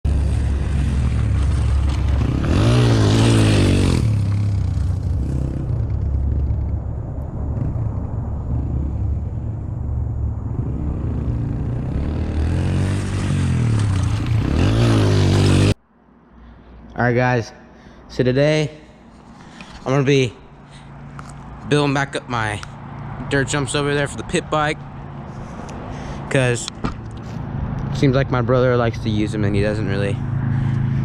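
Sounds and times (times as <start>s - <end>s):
small motorcycle engine revving: 0.1s - 6.1s, 10.6s - 15.8s.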